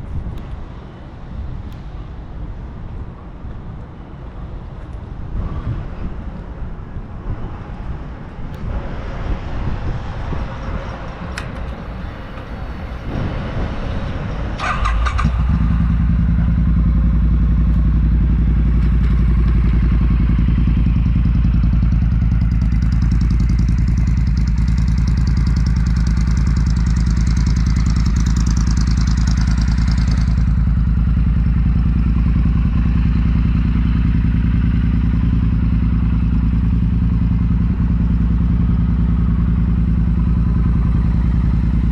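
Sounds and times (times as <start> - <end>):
motorcycle engine idling: 14.6 - 41.9.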